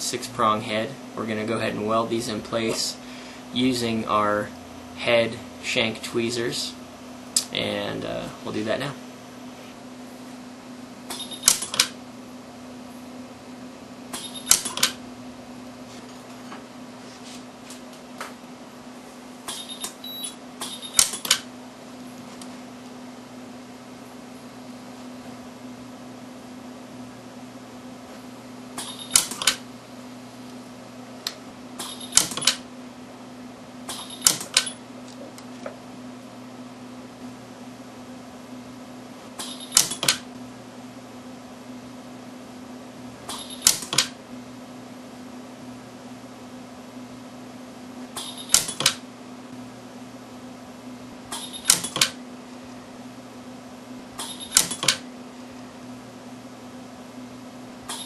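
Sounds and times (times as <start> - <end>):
steady low hum: 0.0 - 58.0
sharp welding snaps: 43.3 - 44.2, 48.2 - 49.0.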